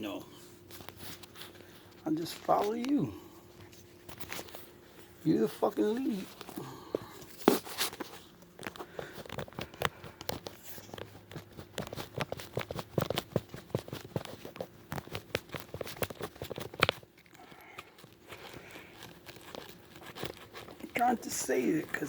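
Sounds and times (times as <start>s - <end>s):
handling clicks and taps: 8.5s - 17.0s.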